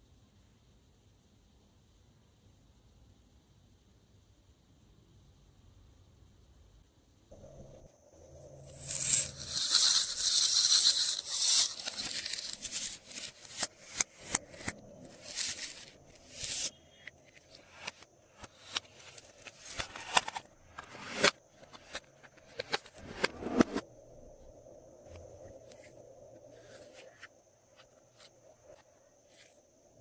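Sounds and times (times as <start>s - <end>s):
packaging crinkling and tearing: 8.7s - 16.7s.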